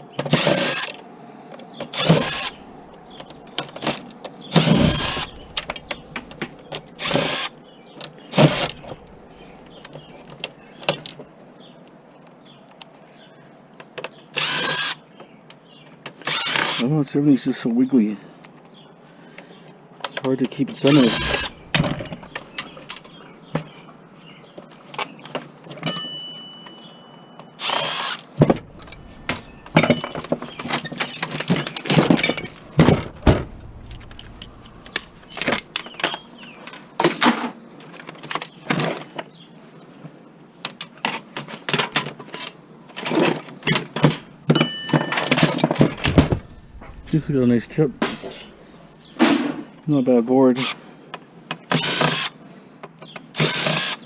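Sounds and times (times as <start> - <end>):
power drill driving screws: 1.9 - 2.6, 4.5 - 6.4, 7.0 - 7.5, 14.4 - 15.0, 16.2 - 16.8, 20.9 - 22.7, 27.6 - 30.2, 51.7 - 52.3, 53.4 - 54.0
plastic and metal parts rattling: 28.4 - 36.2.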